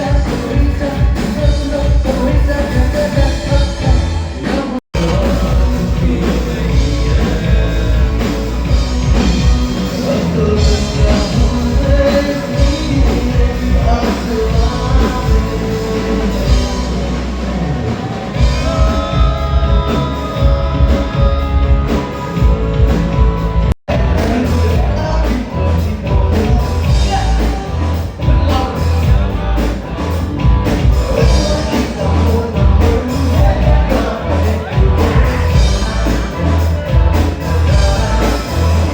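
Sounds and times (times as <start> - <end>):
rock song with singing: 0.0 - 38.9
steady drum beat: 0.0 - 38.9.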